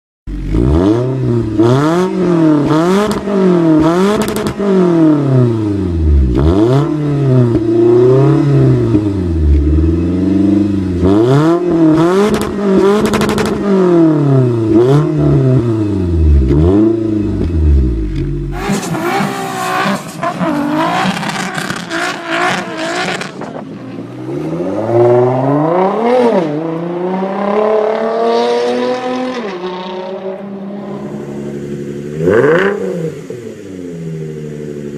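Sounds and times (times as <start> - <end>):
car engine revving: 0.3 - 34.9.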